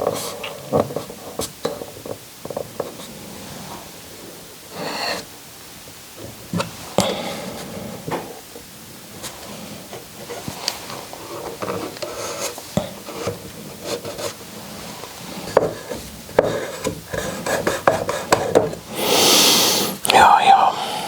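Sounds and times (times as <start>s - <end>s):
wood knocking on wood: 15.5s - 18.8s.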